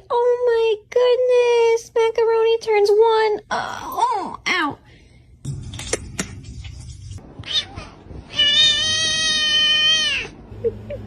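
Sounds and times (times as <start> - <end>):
cat meowing: 7.4 - 10.4.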